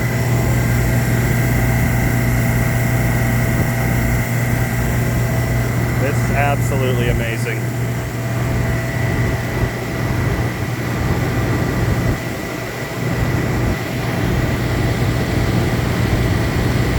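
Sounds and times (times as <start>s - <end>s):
faint high whine: 0.0s - 9.9s
condenser fan rushing: 0.0s - 16.9s
machine hum: 0.0s - 16.9s.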